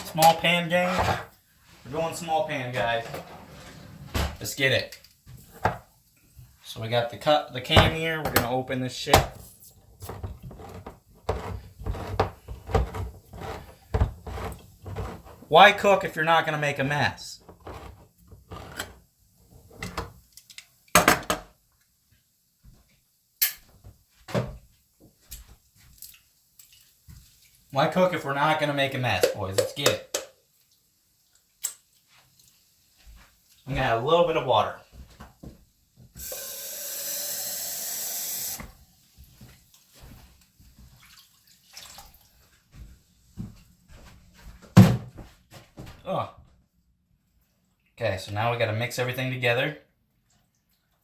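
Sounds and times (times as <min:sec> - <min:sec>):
kitchenware knocking and clattering: 0:21.0 - 0:21.5, 0:29.2 - 0:30.3
kitchen tap running: 0:36.2 - 0:38.8.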